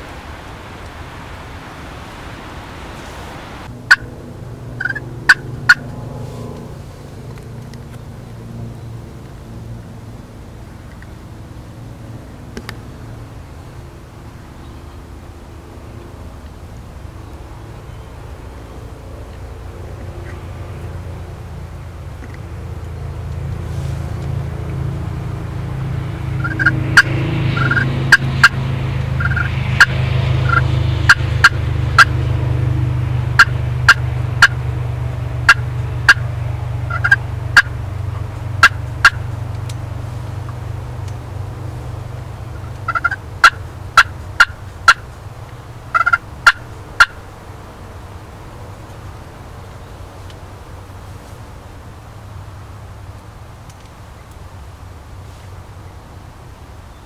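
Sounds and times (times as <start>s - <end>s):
low rumble: 0.0s - 51.2s
turkey clucking and yelping: 3.8s - 4.2s, 4.8s - 5.9s, 26.4s - 28.6s, 29.2s - 32.3s, 33.3s - 34.6s, 35.4s - 39.3s, 42.5s - 45.1s, 45.9s - 47.3s.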